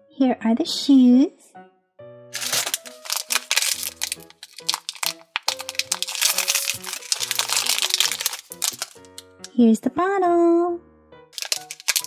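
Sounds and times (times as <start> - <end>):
light background music: 0.0 - 12.0
plastic wrapping crinkling and tearing: 2.4 - 9.5, 11.4 - 12.0.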